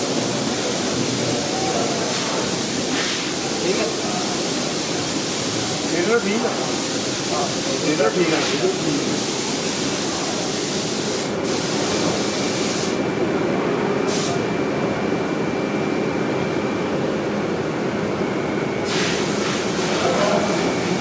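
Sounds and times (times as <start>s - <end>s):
workshop machinery noise: 0.0s - 21.0s
hissing air bursts: 1.9s - 13.0s, 14.1s - 14.4s, 18.8s - 21.0s.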